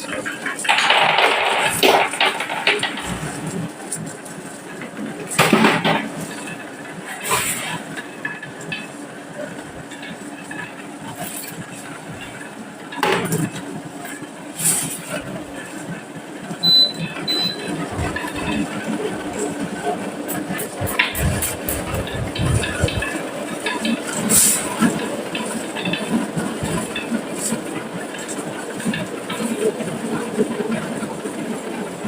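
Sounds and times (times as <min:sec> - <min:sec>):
marbles rolling on wooden track: 0:00.6 - 0:03.7
short high beeps: 0:16.6 - 0:17.8.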